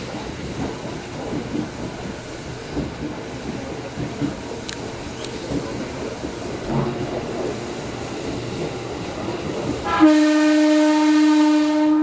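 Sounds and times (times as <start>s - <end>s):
train running on rails: 0.0s - 12.0s
train horn blast: 9.8s - 12.0s.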